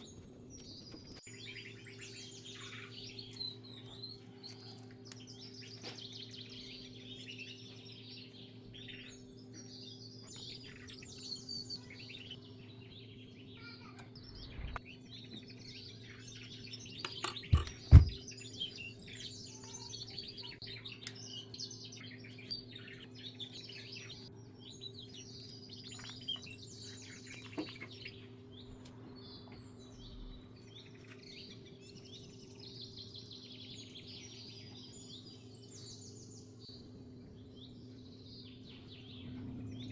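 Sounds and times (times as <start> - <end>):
small birds chirping: 0.0 - 39.9
sharp knocks: 17.4 - 18.2
low hum: 20.7 - 39.9.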